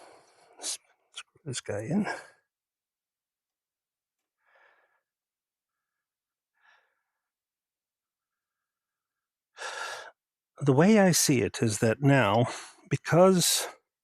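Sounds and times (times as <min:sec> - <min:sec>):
soft breaths: 0:04.3 - 0:07.4.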